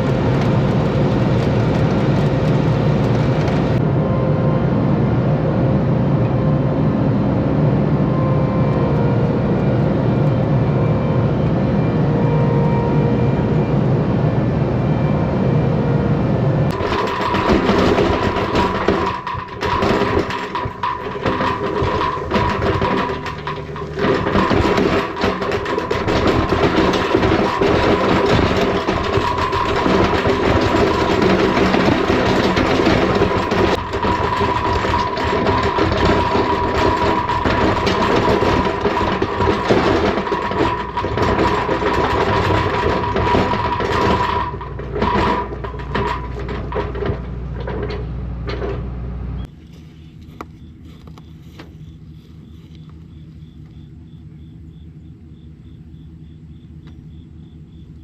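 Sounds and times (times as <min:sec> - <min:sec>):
clanks and rattles: 0:00.0 - 0:03.8, 0:16.7 - 0:53.8
heavy vehicle engine running: 0:00.0 - 0:58.0.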